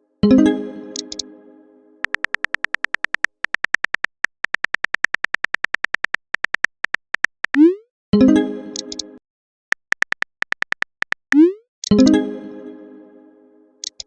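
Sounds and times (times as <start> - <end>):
electronic typing ticks: 1.0 - 1.2, 2.0 - 7.8, 8.8 - 9.0, 9.7 - 12.0.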